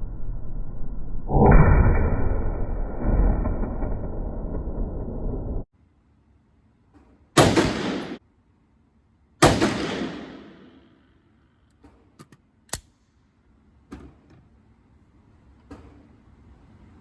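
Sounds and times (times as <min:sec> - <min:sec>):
rifle shot echoing: 0:07.4 - 0:08.2, 0:09.4 - 0:11.0.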